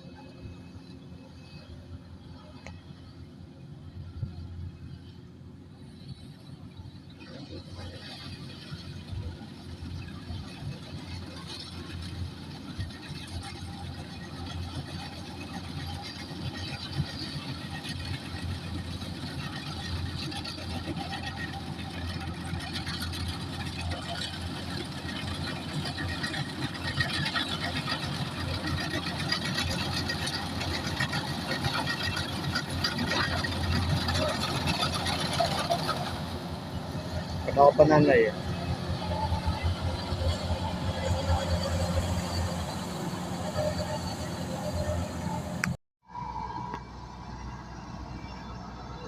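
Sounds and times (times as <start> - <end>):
combine harvester engine drone: 0.0 - 49.0
working machinery noise: 0.0 - 49.0.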